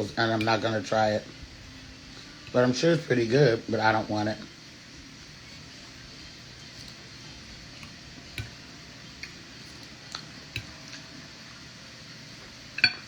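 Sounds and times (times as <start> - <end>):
cutlery tapping on plate: 7.8 - 8.6, 10.5 - 11.0, 12.8 - 13.0.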